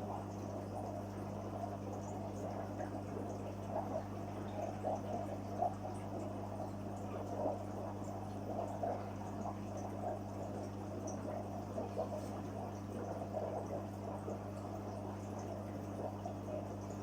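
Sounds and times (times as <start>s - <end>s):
steady low hum: 0.0s - 17.0s
water bubbling and trickling: 0.1s - 17.0s.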